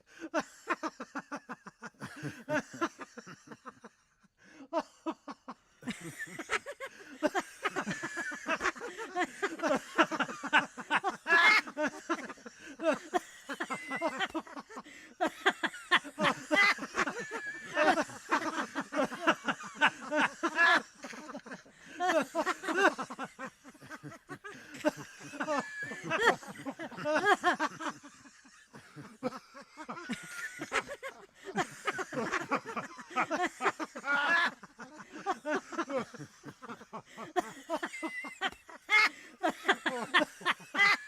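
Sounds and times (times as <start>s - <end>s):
person laughing: 5.9s - 28.1s.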